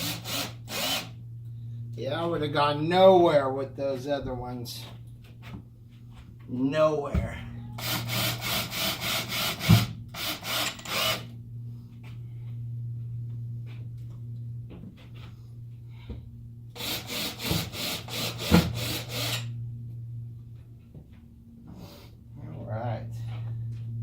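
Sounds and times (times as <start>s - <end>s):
drill driving screws: 0.0s - 1.1s, 7.8s - 11.3s, 16.8s - 19.5s
low hum: 0.0s - 24.0s.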